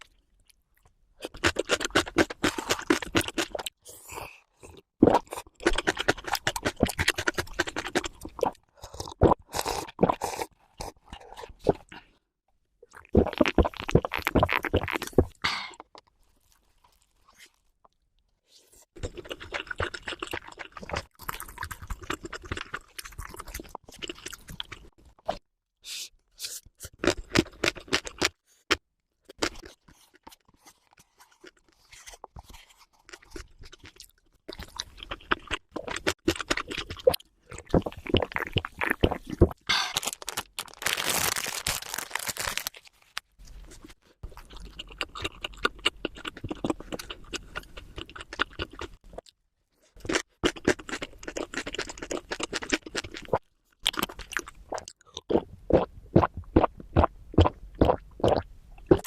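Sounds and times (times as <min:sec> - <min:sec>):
crunching and chewing food: 0:00.0 - 0:12.2, 0:12.8 - 0:25.5, 0:26.8 - 0:59.0.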